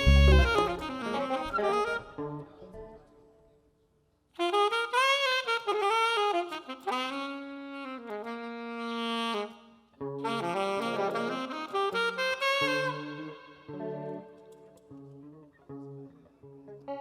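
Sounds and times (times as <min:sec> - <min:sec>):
lead instrument playing kompa melody: 0:00.0 - 0:01.3.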